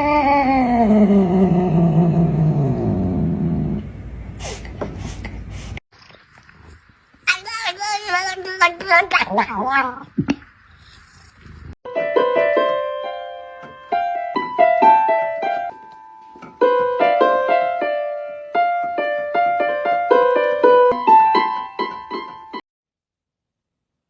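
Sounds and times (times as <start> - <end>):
solo piano melody: 11.9 - 22.6.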